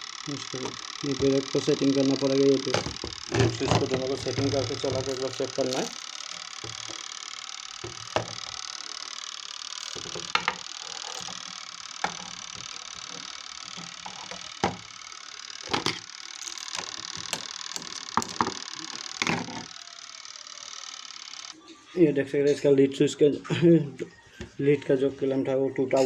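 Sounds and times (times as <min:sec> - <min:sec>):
clicks and knocks of tools: 0:02.7 - 0:07.0, 0:09.8 - 0:14.9, 0:15.6 - 0:19.8.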